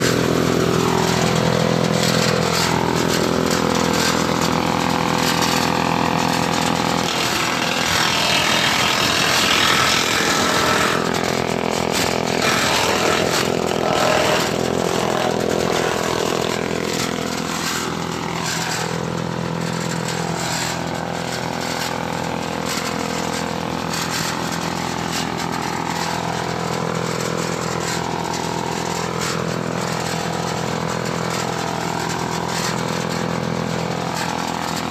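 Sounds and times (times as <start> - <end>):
rough rushing noise: 0.0 - 26.6
grass chopper motor hum: 0.0 - 34.9.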